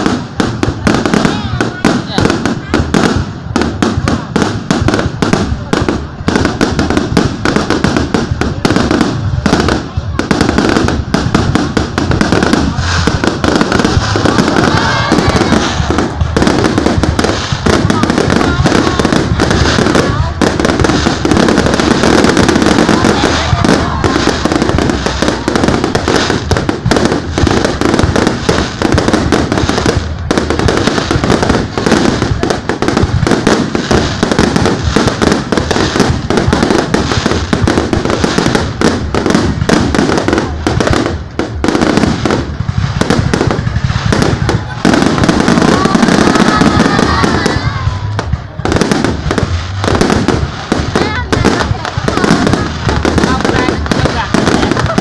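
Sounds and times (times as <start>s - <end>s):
fireworks bangs and crackles: 0.0s - 55.0s.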